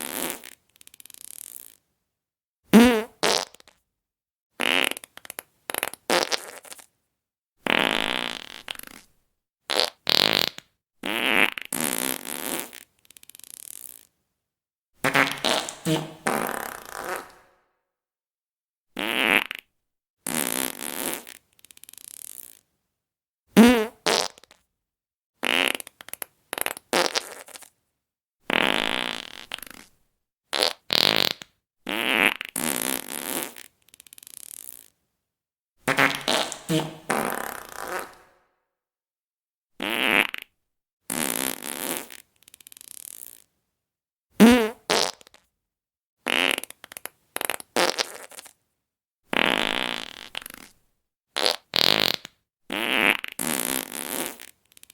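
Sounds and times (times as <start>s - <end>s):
fart sound effects: 2.7s - 3.7s, 7.6s - 9.0s, 9.7s - 12.8s, 15.0s - 17.6s, 19.0s - 19.6s, 23.6s - 24.5s, 35.9s - 38.4s, 39.8s - 40.5s, 44.4s - 45.4s, 46.3s - 48.6s, 49.3s - 50.7s, 51.4s - 54.6s.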